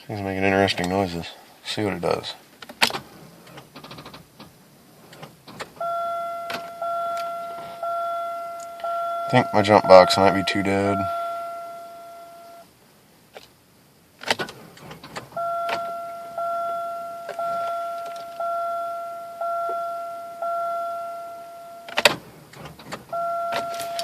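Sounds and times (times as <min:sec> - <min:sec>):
car door clicks: 0:02.6 - 0:09.2, 0:14.2 - 0:16.5, 0:17.2 - 0:18.6, 0:21.9 - 0:24.0
car warning chime dinging: 0:05.6 - 0:12.7, 0:15.2 - 0:22.2, 0:22.9 - 0:24.0.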